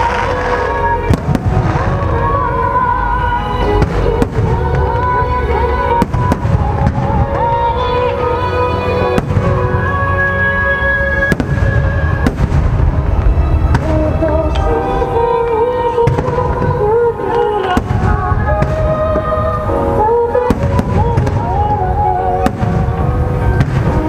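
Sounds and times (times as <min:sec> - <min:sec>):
fireworks explosions: 0:00.0 - 0:10.4, 0:11.0 - 0:24.0
loud music: 0:00.0 - 0:24.0
shells bursting with sharp bangs: 0:11.3 - 0:14.0, 0:22.4 - 0:24.0.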